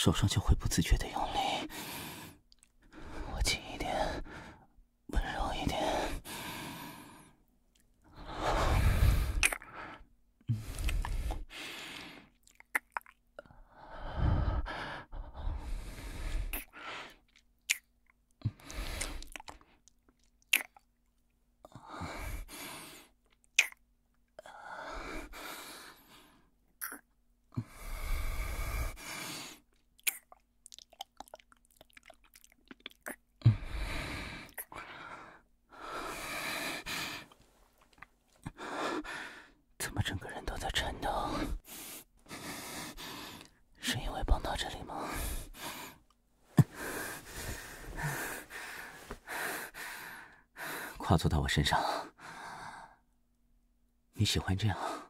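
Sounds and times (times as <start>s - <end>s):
heavy breaths: 1.4s - 4.8s, 5.8s - 7.4s, 8.1s - 12.3s, 13.6s - 17.2s, 21.7s - 23.2s, 27.5s - 29.7s, 33.4s - 37.7s, 40.9s - 43.6s, 44.6s - 51.0s, 51.7s - 53.0s
kissing lip smacks: 9.4s - 9.6s, 12.4s - 13.2s, 17.3s - 17.9s, 20.2s - 20.9s, 23.5s - 23.8s, 26.8s - 27.0s, 30.0s - 33.2s.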